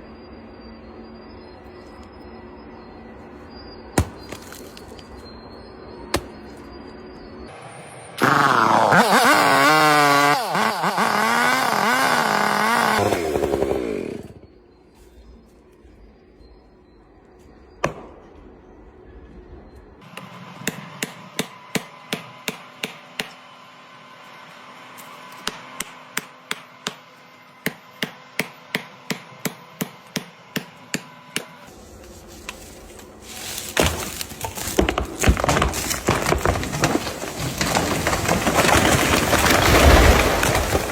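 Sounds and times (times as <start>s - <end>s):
tree cracking and falling: 4.0s - 5.2s, 8.2s - 14.4s, 31.8s - 40.9s.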